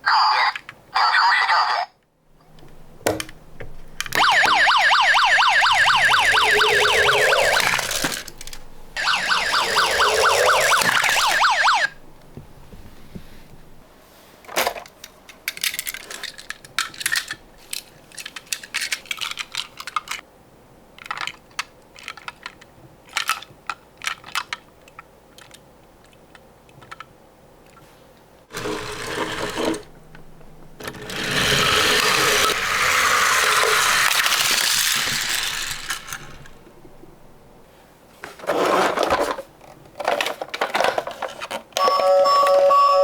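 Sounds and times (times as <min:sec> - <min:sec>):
toy cars clinking: 0:04.0 - 0:11.9, 0:15.4 - 0:20.2, 0:28.5 - 0:29.9, 0:30.8 - 0:36.6
toy cars rolling down wooden ramp: 0:05.7 - 0:08.6, 0:09.3 - 0:11.7, 0:28.5 - 0:29.9, 0:30.8 - 0:36.6, 0:38.4 - 0:41.6.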